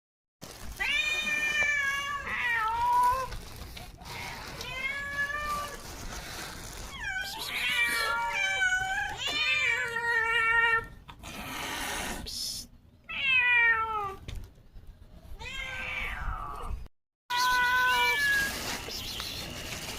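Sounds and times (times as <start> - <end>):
cat meowing: 13.1 - 14.2, 15.4 - 18.6.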